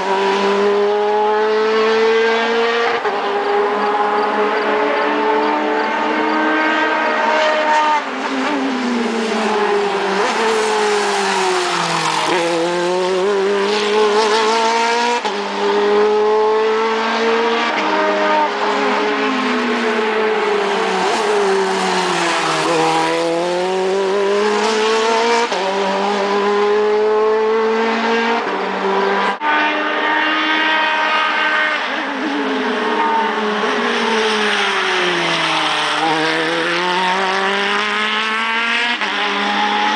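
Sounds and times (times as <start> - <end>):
race car engines revving: 0.0 - 39.9.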